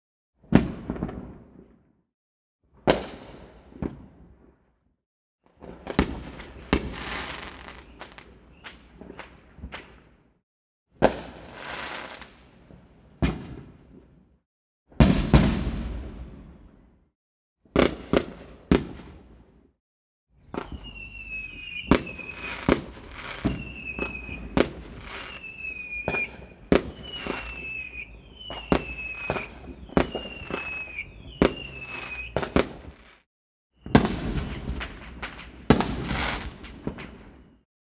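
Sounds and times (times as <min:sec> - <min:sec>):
firework bangs: 0:00.5 - 0:01.5, 0:05.6 - 0:10.0, 0:15.0 - 0:16.7, 0:20.5 - 0:33.2, 0:33.8 - 0:37.3
fireworks crackling: 0:05.6 - 0:10.0, 0:11.0 - 0:12.4, 0:20.4 - 0:33.2, 0:33.9 - 0:37.2
whistling fireworks: 0:05.6 - 0:10.1, 0:11.0 - 0:14.0, 0:20.4 - 0:37.6.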